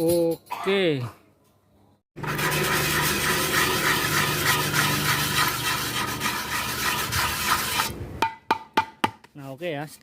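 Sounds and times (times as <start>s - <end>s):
sandpaper scratching on plastic pipe: 2.2s - 8.0s.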